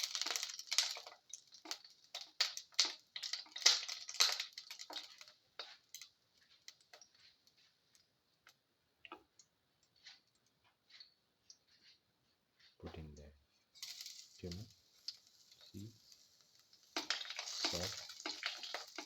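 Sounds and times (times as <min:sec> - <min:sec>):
utensil scraping a frying pan: 0:00.0 - 0:07.8, 0:13.7 - 0:19.0.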